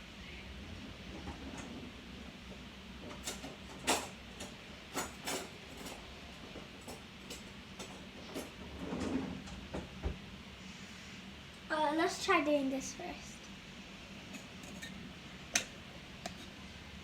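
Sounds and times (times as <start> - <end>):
low steady hum: 0.0 - 17.0.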